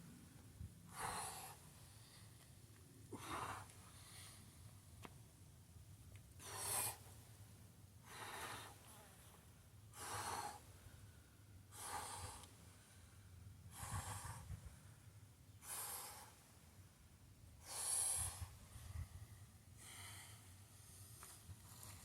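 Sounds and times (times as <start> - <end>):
person breathing hard: 0.9 - 2.4, 8.0 - 9.2, 9.9 - 16.6, 17.6 - 22.0.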